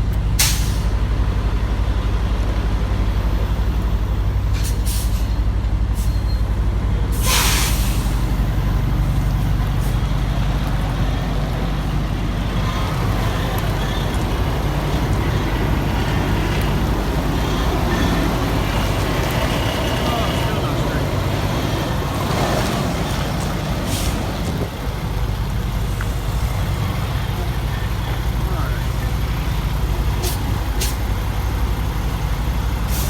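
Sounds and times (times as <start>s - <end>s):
truck diesel engine running: 0.0s - 33.0s
air brake hiss: 0.4s - 0.9s, 4.6s - 5.4s, 7.1s - 8.4s, 30.2s - 31.0s.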